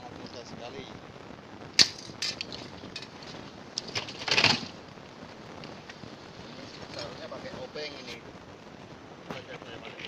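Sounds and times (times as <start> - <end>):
clattering burst: 1.8 - 4.8.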